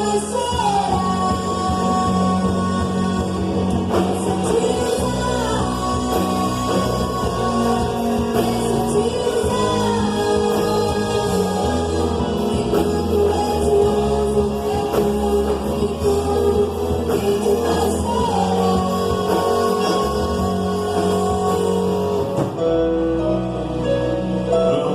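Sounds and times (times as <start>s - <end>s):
person singing: 0.0s - 23.1s
band playing gospel song: 0.0s - 24.9s.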